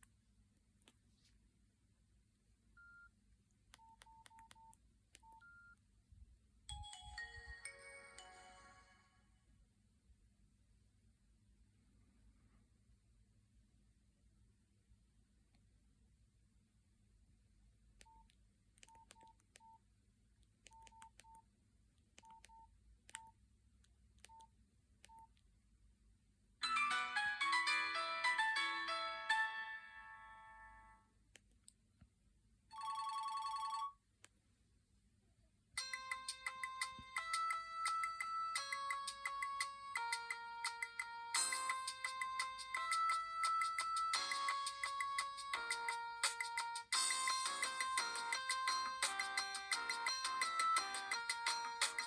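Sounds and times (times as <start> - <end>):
key beeps: 3.8 - 5.8, 18.0 - 19.8, 20.7 - 21.4, 22.2 - 23.4, 24.2 - 24.5, 25.1 - 25.3
phone ringtone: 6.7 - 9.2, 26.6 - 30.9, 32.7 - 34.0, 35.8 - 52.0.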